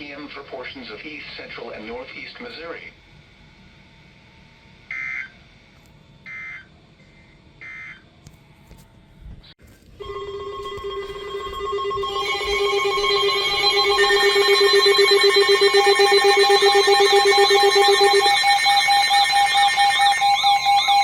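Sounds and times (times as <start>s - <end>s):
pulsing electronic alert tones: 10.0s - 21.0s
warbling chirp: 11.6s - 21.0s.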